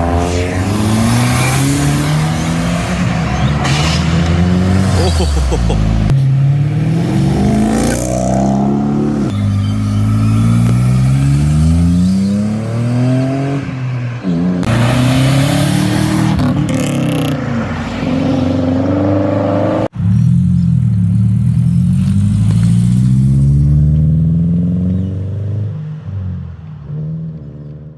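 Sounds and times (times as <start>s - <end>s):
loud rushing noise: 0.0s - 6.2s
car engines revving: 0.0s - 27.9s.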